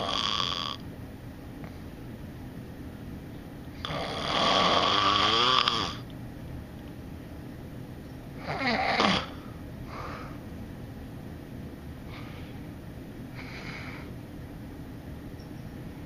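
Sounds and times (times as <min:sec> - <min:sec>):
man snoring: 0:00.0 - 0:00.8, 0:03.8 - 0:06.0.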